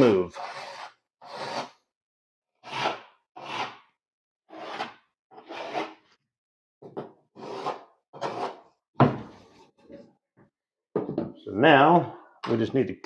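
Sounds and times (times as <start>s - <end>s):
tool scratching drywall: 0.3s - 1.9s, 2.6s - 3.9s, 4.5s - 6.1s, 7.4s - 8.7s.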